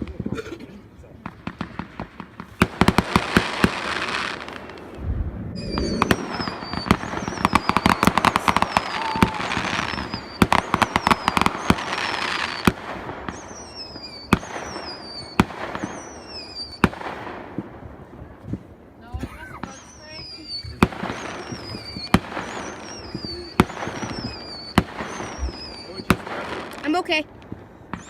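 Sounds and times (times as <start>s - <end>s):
fireworks bangs and crackles: 0.0s - 28.0s
firework whistles falling in pitch: 5.6s - 17.0s, 19.6s - 27.0s, 27.8s - 28.0s.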